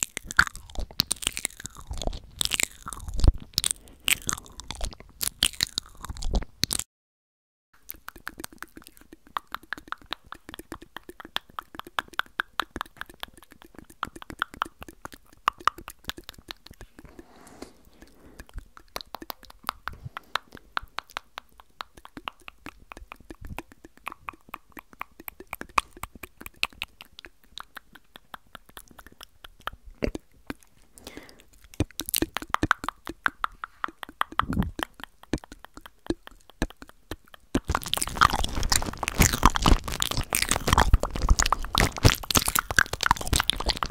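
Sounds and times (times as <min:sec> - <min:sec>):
wet tongue clicks and lip pops: 0:00.0 - 0:06.9, 0:07.8 - 0:43.9.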